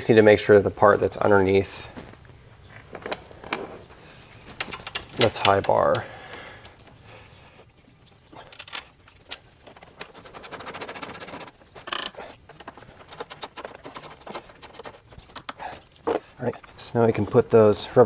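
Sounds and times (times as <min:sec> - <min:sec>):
hand tools clicking on metal: 0:04.5 - 0:07.2, 0:08.1 - 0:16.8
rapid even clicking: 0:04.5 - 0:16.9.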